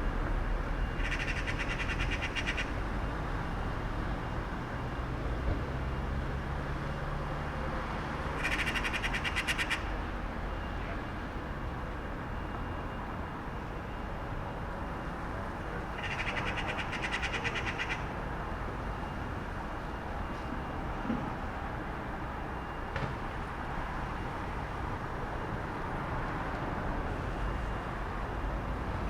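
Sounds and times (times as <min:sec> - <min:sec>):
distant traffic hum: 0:00.0 - 0:29.0
bird chattering calls: 0:01.0 - 0:02.8, 0:08.4 - 0:09.9, 0:16.0 - 0:18.1.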